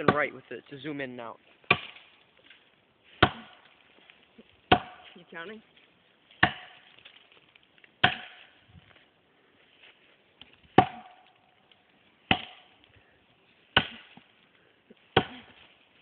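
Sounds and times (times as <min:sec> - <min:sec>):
axe chopping tree trunk: 0:00.0 - 0:00.4, 0:01.6 - 0:02.2, 0:03.1 - 0:03.8, 0:04.6 - 0:05.2, 0:06.4 - 0:07.1, 0:08.0 - 0:08.6, 0:10.7 - 0:11.4, 0:12.2 - 0:12.8, 0:13.7 - 0:14.3, 0:15.1 - 0:15.6.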